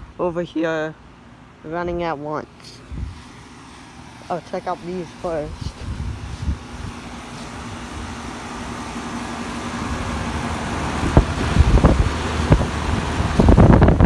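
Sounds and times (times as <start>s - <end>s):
air-conditioner units humming: 0.0s - 14.0s
wind buffeting microphone: 2.9s - 3.3s, 5.2s - 14.0s.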